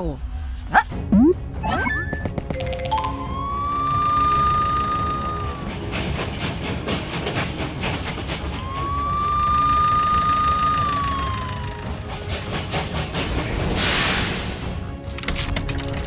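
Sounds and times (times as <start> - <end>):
siren wailing: 3.1 - 5.7, 8.6 - 12.0.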